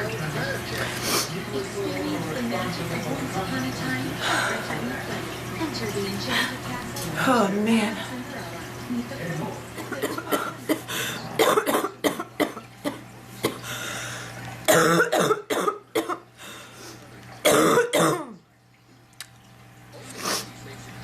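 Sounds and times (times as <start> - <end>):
woman coughing: 9.8 - 13.6, 14.7 - 16.2, 17.5 - 18.4.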